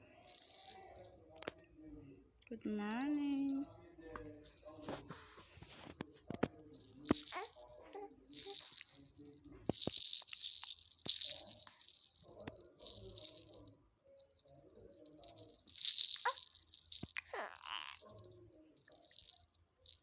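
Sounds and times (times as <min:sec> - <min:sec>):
baby rattle shaking: 0:00.1 - 0:01.5, 0:03.0 - 0:20.0.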